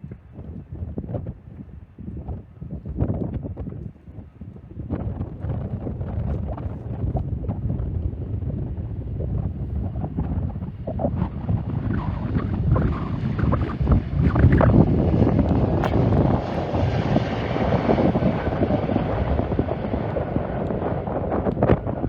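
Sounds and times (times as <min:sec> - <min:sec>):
wind buffeting microphone: 0:00.0 - 0:22.0
jet airliner passing: 0:06.0 - 0:22.0.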